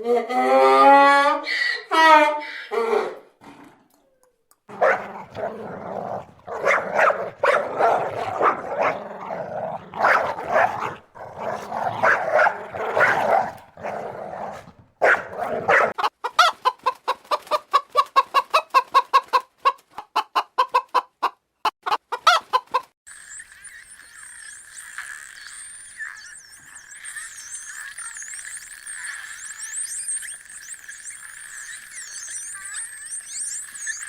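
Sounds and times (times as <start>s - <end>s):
chickens clucking: 4.7s - 22.9s.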